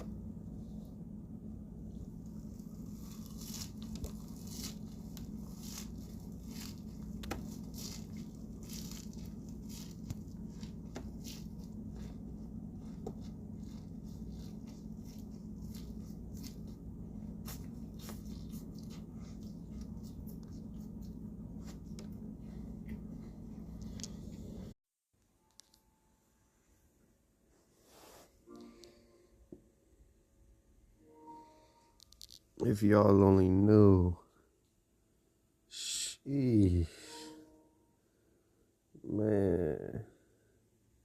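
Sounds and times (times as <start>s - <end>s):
steady low hum: 0.0s - 24.8s
rustling and tearing of greens: 1.8s - 24.6s.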